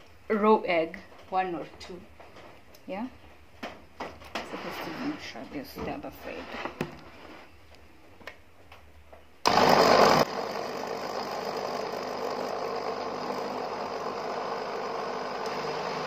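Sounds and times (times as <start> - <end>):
blender running: 9.5 - 16.0.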